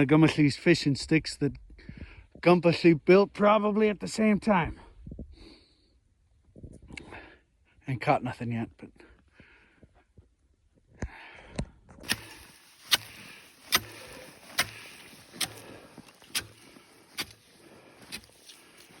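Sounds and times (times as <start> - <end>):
ice chipping strikes: 12.0 - 17.5
gritty ice crunching: 12.0 - 19.0.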